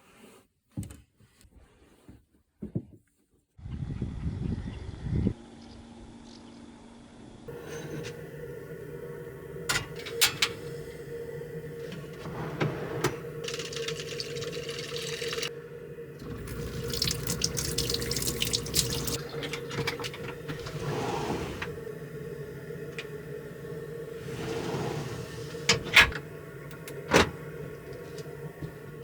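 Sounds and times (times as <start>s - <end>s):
steady hum: 4.4s - 29.0s
tap water running into sink: 13.4s - 15.5s, 16.2s - 20.6s.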